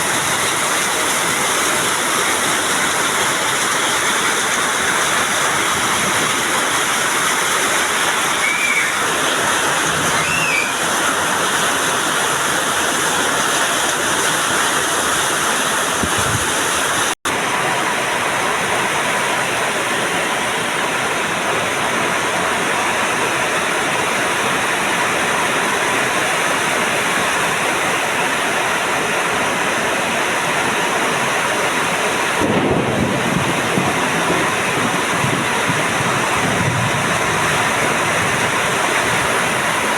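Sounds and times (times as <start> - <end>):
heavy rain pouring: 0.0 - 39.9
thunder rumbling: 32.4 - 39.6.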